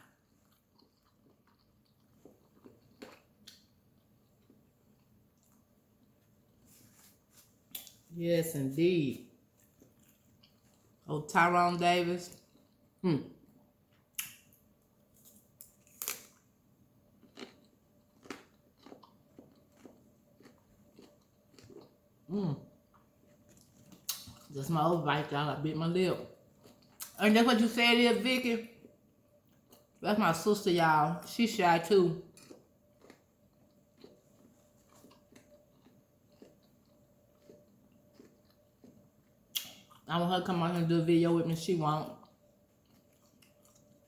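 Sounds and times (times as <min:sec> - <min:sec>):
person chewing crunchy food: 0:00.0 - 0:08.0, 0:09.4 - 0:11.1, 0:17.1 - 0:24.5, 0:26.4 - 0:27.2, 0:28.8 - 0:30.0, 0:32.3 - 0:40.1, 0:42.2 - 0:44.0
faint chewing mouth clicks: 0:17.2 - 0:22.0, 0:32.4 - 0:40.0.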